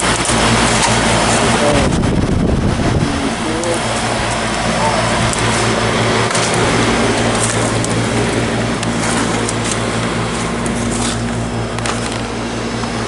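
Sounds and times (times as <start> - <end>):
condenser fans rushing: 0.0 - 13.0
heat pump compressor hum: 0.0 - 13.0
crunching footsteps: 3.6 - 13.0.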